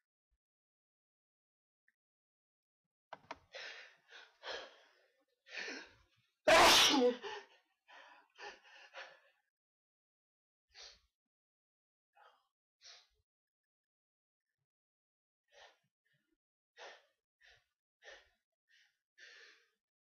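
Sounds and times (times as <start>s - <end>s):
person sneezing: 6.5s - 7.2s
short gasping breaths: 16.8s - 19.8s.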